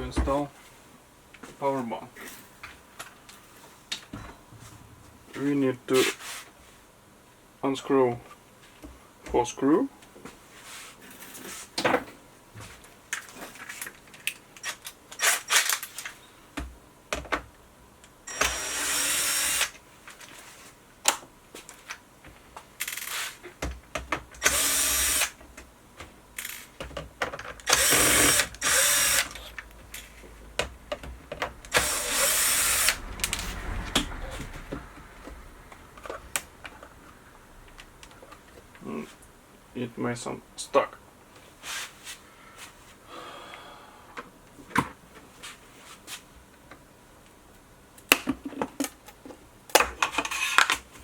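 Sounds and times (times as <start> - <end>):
cordless electric screwdriver running: 18.3 - 19.8, 24.4 - 25.4, 27.6 - 29.6, 31.7 - 33.0.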